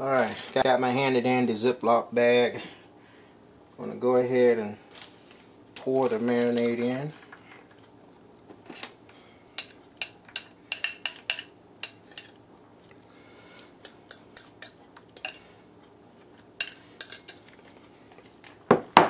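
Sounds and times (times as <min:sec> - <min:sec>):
metal utensil clinking on bowl: 0:13.8 - 0:15.4, 0:16.6 - 0:17.5.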